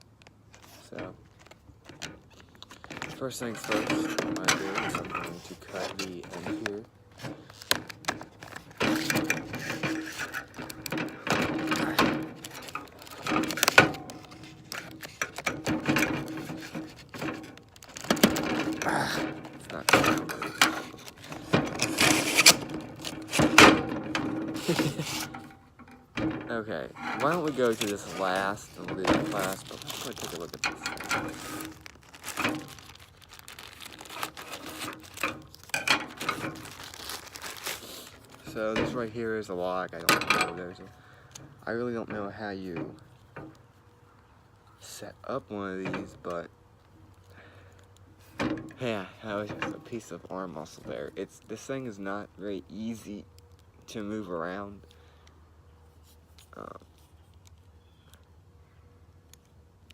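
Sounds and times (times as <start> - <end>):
scissors cutting packaging: 11.8 - 15.4, 16.6 - 23.4, 27.2 - 38.4.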